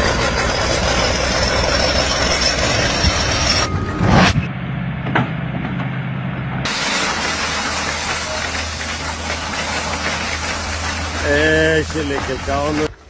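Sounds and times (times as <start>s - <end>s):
engine running steadily: 0.0s - 13.0s
hiss: 6.7s - 12.9s.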